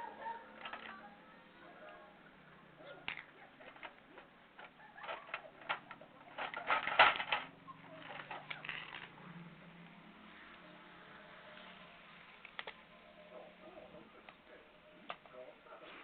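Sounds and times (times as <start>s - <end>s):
small clicks and rattling: 0.5s - 1.2s, 3.0s - 9.3s.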